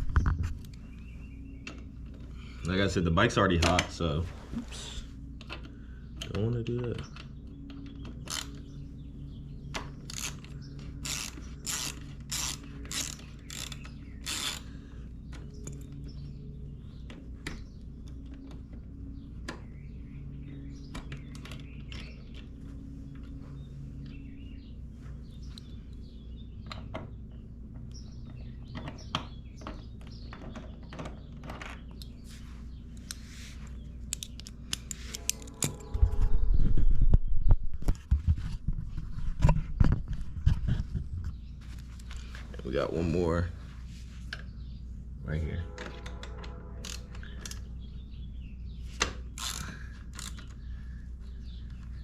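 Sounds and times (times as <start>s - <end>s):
steady low hum: 0.0s - 52.0s
hand ratchet clicking: 10.0s - 14.7s, 49.4s - 50.5s.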